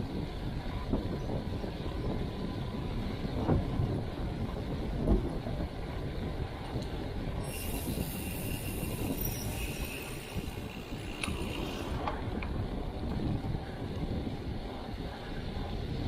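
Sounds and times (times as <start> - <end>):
vehicle low rumble: 0.0 - 16.0
high metallic squeal: 7.4 - 10.6.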